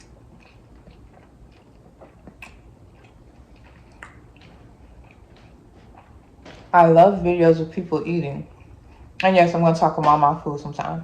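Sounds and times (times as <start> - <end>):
wet mouth clicks: 0.0 - 6.2
person chewing: 0.0 - 6.7, 8.4 - 9.2.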